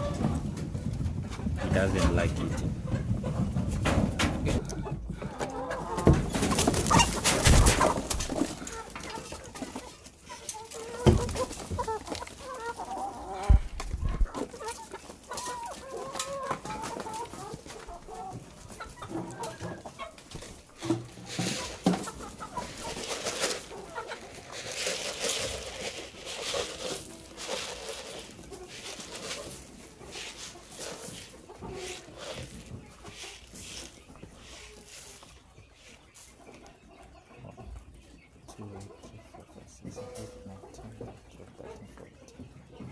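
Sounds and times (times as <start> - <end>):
chickens clucking: 0.0 - 42.9
loud low thumps: 13.5 - 14.3.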